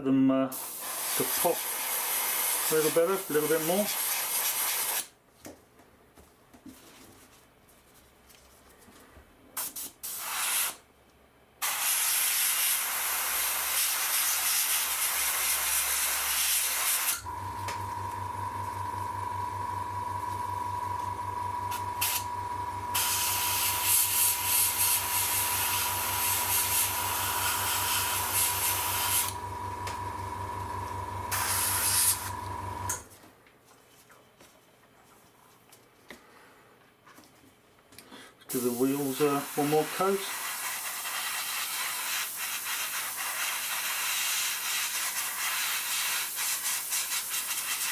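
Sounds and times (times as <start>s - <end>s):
airbrush spraying paint: 0.5s - 5.1s, 11.6s - 17.3s, 22.0s - 22.3s, 22.9s - 29.4s, 31.3s - 32.3s, 38.5s - 47.9s
electric hum with whine: 17.2s - 33.1s.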